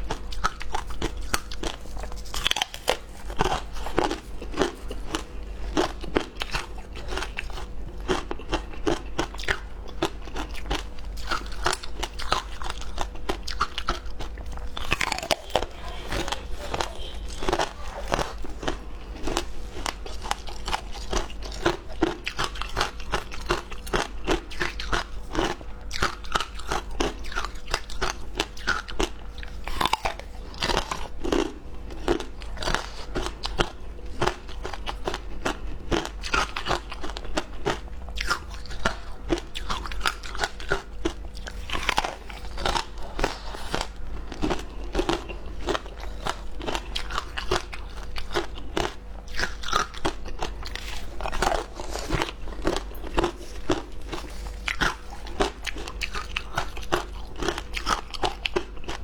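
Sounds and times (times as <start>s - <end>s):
ice crunching between teeth: 0.0s - 59.0s.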